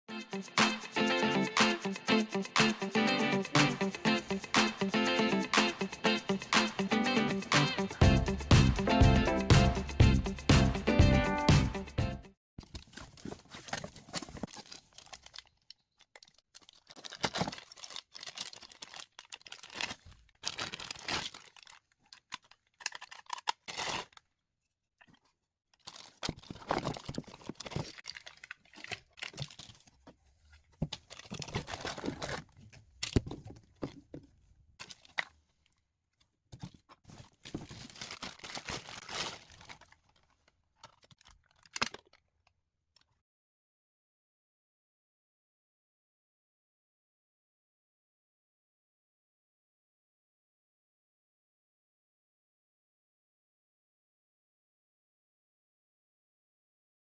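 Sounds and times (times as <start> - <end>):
packaging rustling and tearing: 12.7 - 24.4, 25.1 - 30.0, 30.7 - 33.2, 36.7 - 42.2.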